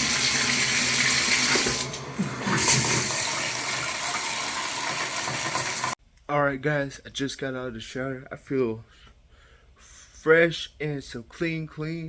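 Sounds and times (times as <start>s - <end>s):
shower water spraying: 0.0s - 6.0s.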